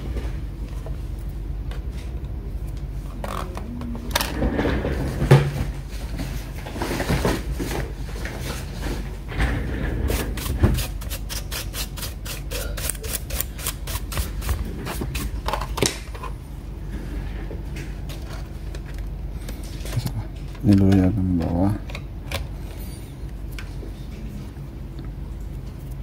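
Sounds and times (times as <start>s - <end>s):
knocks and rustles: 4.2s - 10.8s.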